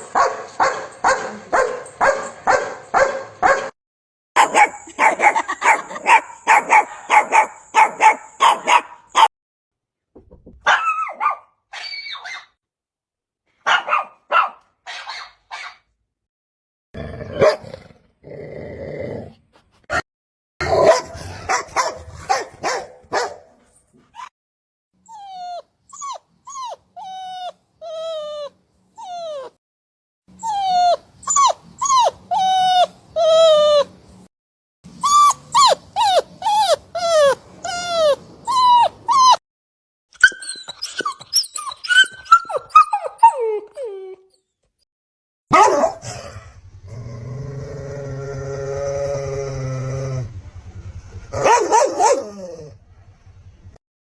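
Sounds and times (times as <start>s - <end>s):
dog barking: 0.0s - 3.8s, 4.4s - 9.3s, 10.6s - 12.5s, 13.6s - 15.8s, 17.4s - 17.6s, 20.6s - 23.6s, 45.5s - 46.1s, 51.4s - 52.3s
dog whimpering and yipping: 25.0s - 29.6s, 30.4s - 34.0s, 35.0s - 39.4s, 40.2s - 44.4s.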